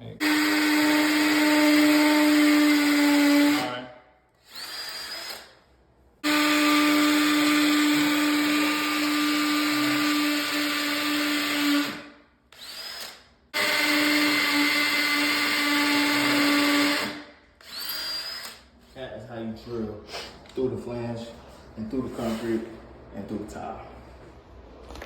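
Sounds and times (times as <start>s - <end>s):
power drill drilling into concrete: 0.2s - 3.8s, 4.4s - 5.6s, 6.2s - 18.6s.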